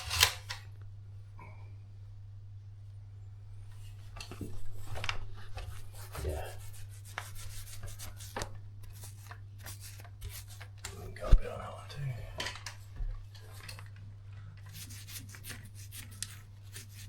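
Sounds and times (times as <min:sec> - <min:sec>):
scraping and rubbing: 0:00.0 - 0:00.6, 0:03.8 - 0:11.8, 0:14.6 - 0:17.0
steady low hum: 0:00.0 - 0:16.7.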